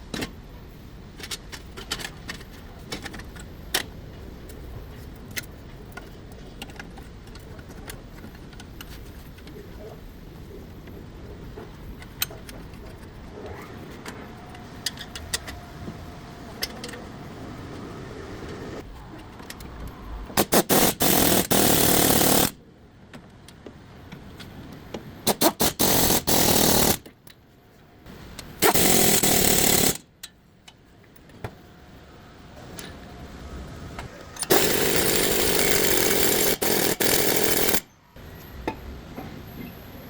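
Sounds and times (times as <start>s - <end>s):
impact wrench bursts: 20.4s - 22.6s, 25.2s - 27.1s, 28.6s - 30.1s, 34.2s - 37.8s
sharp metallic clicks: 25.3s - 27.4s, 28.3s - 30.8s, 34.2s - 37.9s.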